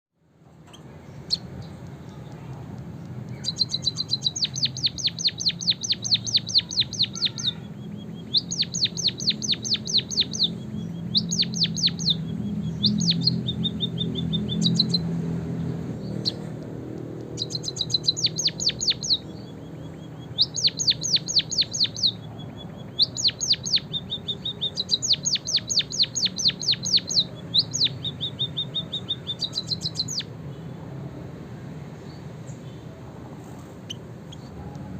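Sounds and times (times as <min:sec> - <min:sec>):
bird singing high fast notes: 0:03.3 - 0:15.2, 0:16.0 - 0:16.5, 0:17.3 - 0:30.4.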